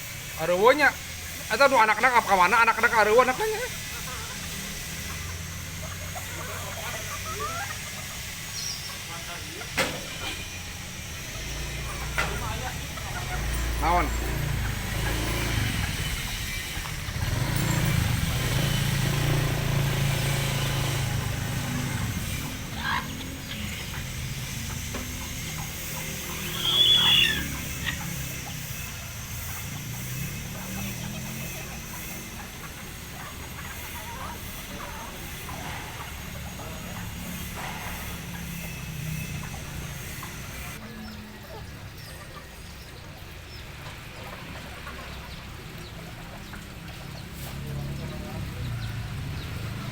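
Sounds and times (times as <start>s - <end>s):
chickens calling: 0.0s - 49.9s
loud high-pitched chicken call: 1.3s - 9.8s, 18.4s - 36.1s.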